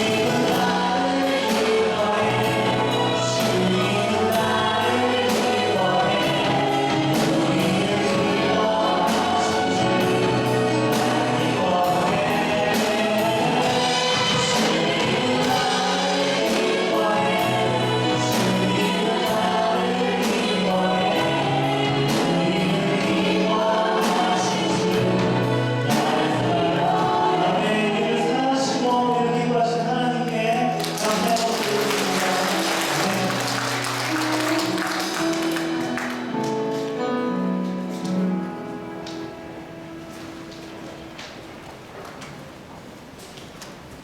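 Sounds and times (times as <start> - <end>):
steady drum beat: 0.0 - 27.5
congregation singing worship song: 0.0 - 41.9
band accompaniment: 0.0 - 44.0.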